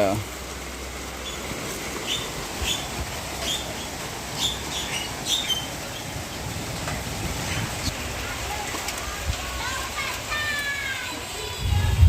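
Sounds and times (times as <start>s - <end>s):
steady background hiss: 0.0s - 12.0s
bird chirping: 1.2s - 7.9s.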